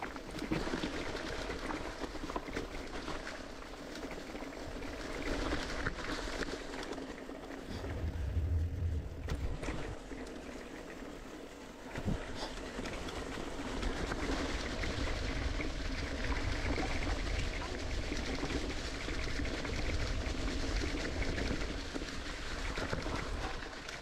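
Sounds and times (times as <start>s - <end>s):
bike rattling: 3.7s - 11.6s
bike tyre rumble: 3.8s - 24.0s
wind rushing over microphone: 7.6s - 10.1s.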